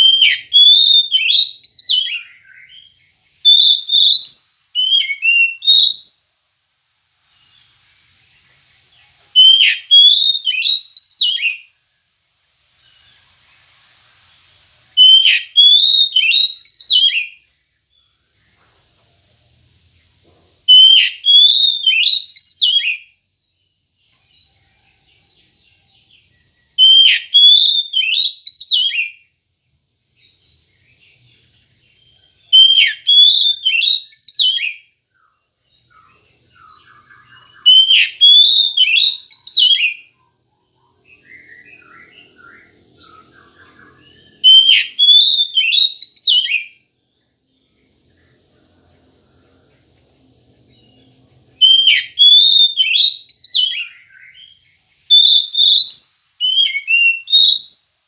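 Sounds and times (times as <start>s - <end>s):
soft bird twittering: 0.0s - 6.4s, 12.7s - 58.0s.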